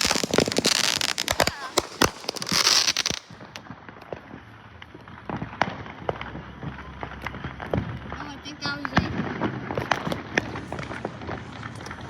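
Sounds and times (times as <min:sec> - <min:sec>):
faint firework pops: 0:00.0 - 0:12.0
fireworks crackling: 0:00.0 - 0:12.0.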